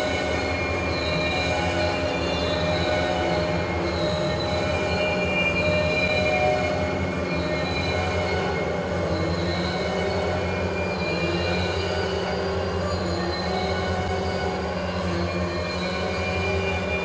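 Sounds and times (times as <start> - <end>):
railroad cars rumbling: 0.0 - 17.0
train wheels squealing: 0.0 - 17.0.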